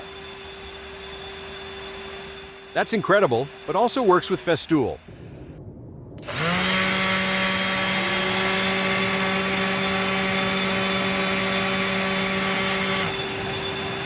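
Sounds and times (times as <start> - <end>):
vacuum cleaner running: 0.0 - 4.6, 6.2 - 14.0
power tool motor whining: 6.2 - 14.0.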